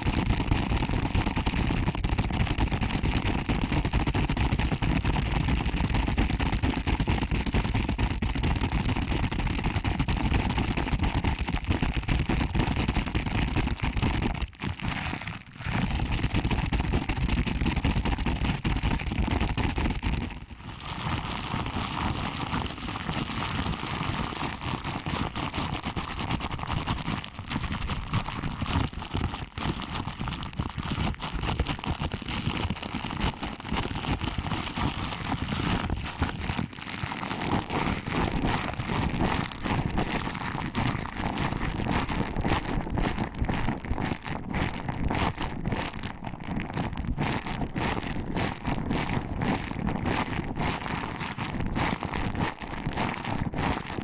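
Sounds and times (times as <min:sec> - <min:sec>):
microphone rubbed by hand: 0:12.8 - 0:17.1, 0:33.2 - 0:46.6.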